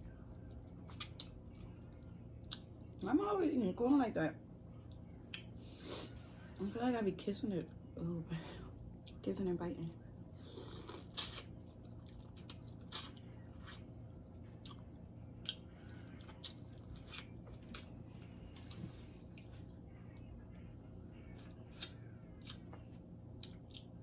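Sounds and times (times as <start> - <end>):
wet chewing and biting: 0.6 - 1.6, 10.7 - 13.9, 14.5 - 19.8, 21.3 - 24.0.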